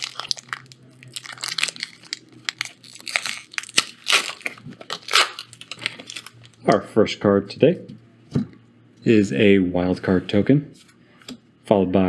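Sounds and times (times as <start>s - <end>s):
foil wrapper tearing and crinkling: 0.0s - 6.6s.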